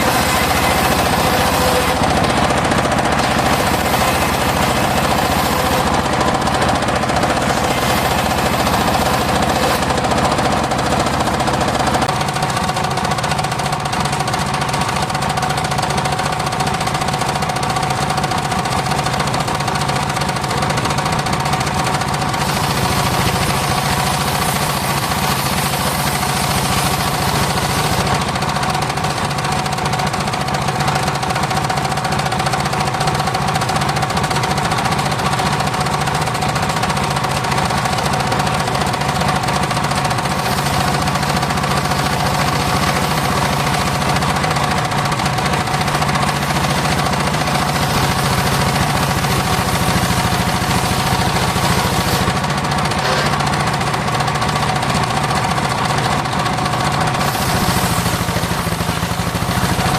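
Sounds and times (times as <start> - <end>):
circular saw whine: 0.0 - 11.2
engine clatter: 0.0 - 59.9.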